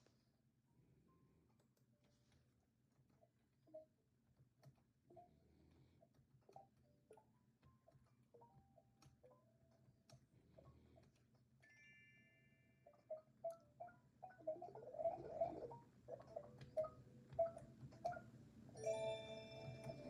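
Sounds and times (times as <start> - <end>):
soft chime-like tones: 11.6 - 15.6, 18.8 - 20.0.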